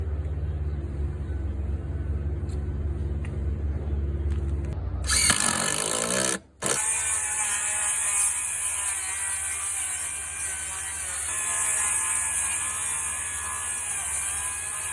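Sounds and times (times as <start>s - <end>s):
power tool motor hum: 5.1s - 8.4s
power tool high whine: 5.1s - 14.9s.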